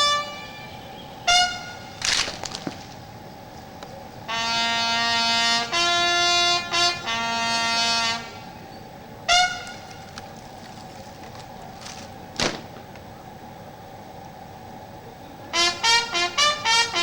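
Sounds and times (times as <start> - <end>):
brass bugle call: 0.0 - 2.6, 4.2 - 12.6, 15.5 - 17.0
faint steady hum: 0.0 - 17.0.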